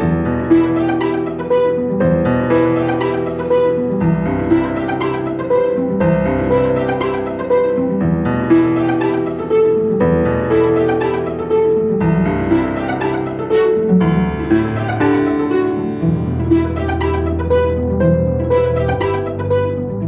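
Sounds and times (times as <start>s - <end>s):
gentle piano music: 0.0s - 20.0s.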